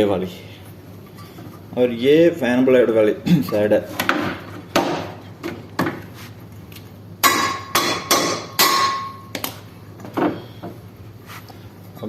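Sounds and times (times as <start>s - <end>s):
sharp strikes on metal ringing: 7.2s - 9.3s.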